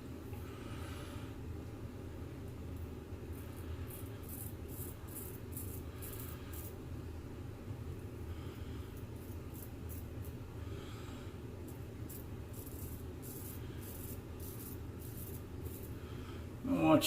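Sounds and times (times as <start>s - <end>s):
steady low hum: 0.0s - 17.0s
razor scraping stubble: 12.0s - 16.0s.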